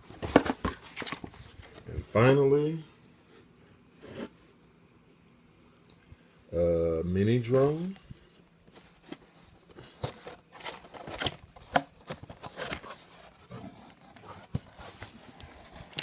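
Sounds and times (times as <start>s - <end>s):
packaging clicking and crinkling: 9.1s - 13.0s.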